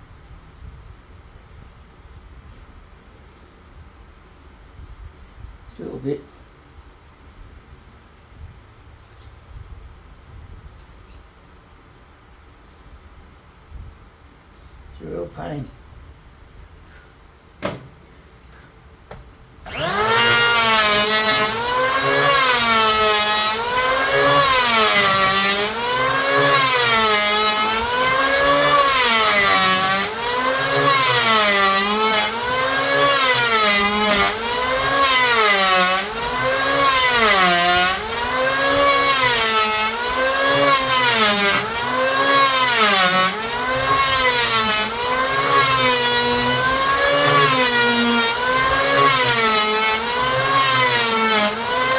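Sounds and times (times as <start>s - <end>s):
electric hand planer cutting wood: 19.7s - 51.9s.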